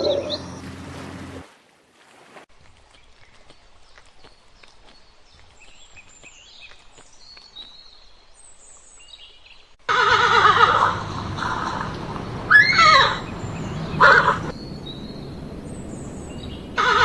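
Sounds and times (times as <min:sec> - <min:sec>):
loud trembling animal call: 0:09.9 - 0:17.0.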